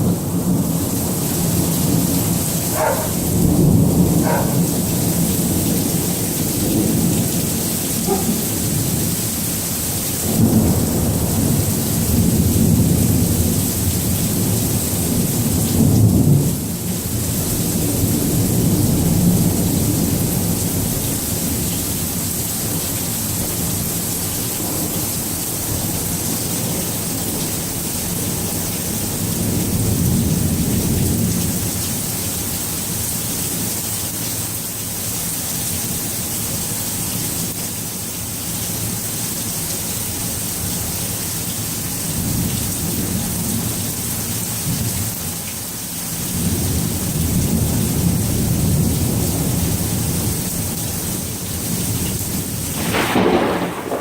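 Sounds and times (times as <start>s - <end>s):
rolling thunder rumbling: 0.0s - 21.7s, 52.3s - 54.0s
steady rain falling: 0.0s - 54.0s.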